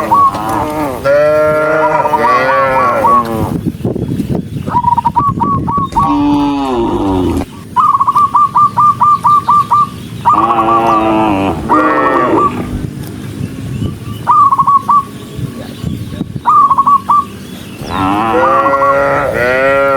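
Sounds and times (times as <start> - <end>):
animal chirping call: 1.8 - 3.4, 4.6 - 12.7, 13.9 - 17.4.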